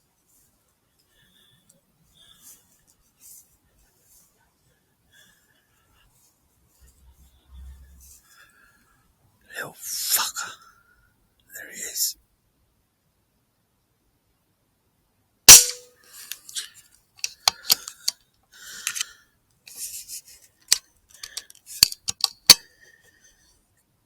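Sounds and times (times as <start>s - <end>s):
gunshot crack: 15.5s - 15.9s
clicks: 21.2s - 22.6s.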